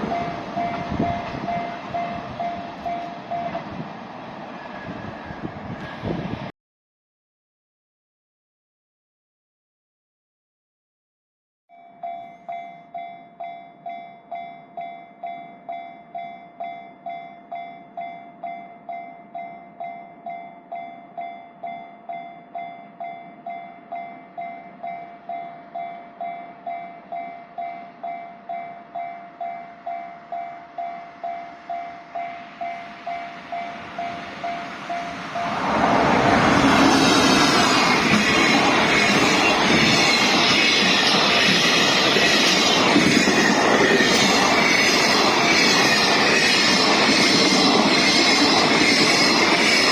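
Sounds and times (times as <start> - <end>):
level-crossing warning bell: 0.0 - 3.8, 11.7 - 35.7, 36.5 - 49.9
train rushing past: 0.0 - 6.5, 27.6 - 49.9.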